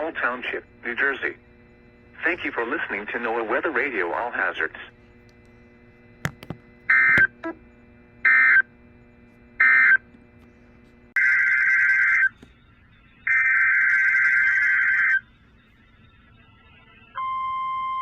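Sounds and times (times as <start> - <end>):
clicks: 6.2 - 7.3.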